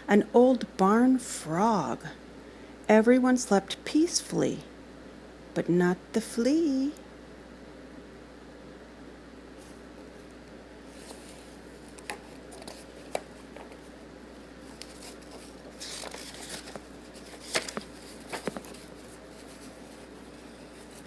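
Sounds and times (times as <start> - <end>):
paper rustle: 10.9 - 13.9, 14.6 - 21.0.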